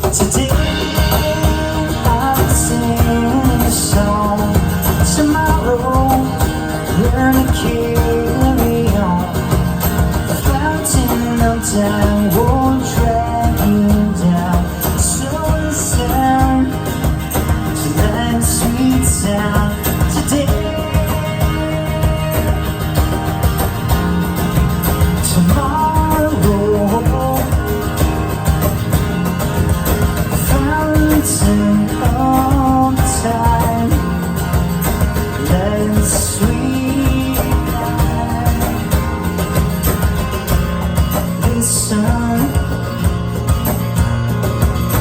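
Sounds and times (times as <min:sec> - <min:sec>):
person singing: 0:00.0 - 0:23.0, 0:25.2 - 0:27.8, 0:30.4 - 0:34.4, 0:35.4 - 0:39.1
live pop-rock band playing: 0:00.0 - 0:45.0.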